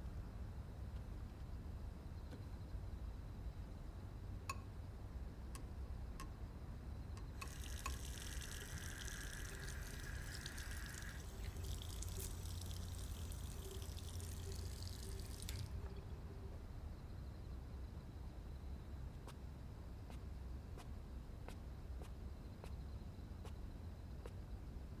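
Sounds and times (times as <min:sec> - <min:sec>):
running water hiss: 0:07.4 - 0:15.8.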